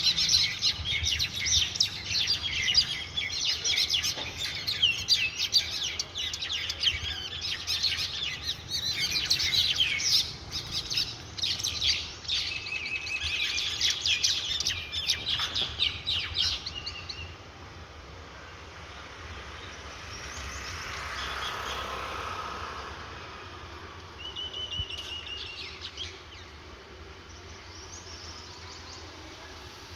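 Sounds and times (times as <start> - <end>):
small birds chirping and squawking: 0.0 - 17.4.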